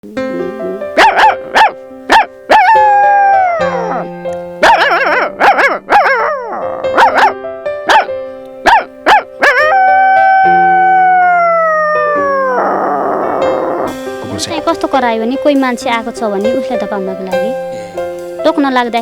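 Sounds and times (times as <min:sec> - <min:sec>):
background music with held notes: 0:00.0 - 0:19.0
woman imitating dog barks: 0:02.5 - 0:02.9
woman howling: 0:02.6 - 0:04.1, 0:06.1 - 0:07.0, 0:09.4 - 0:14.0.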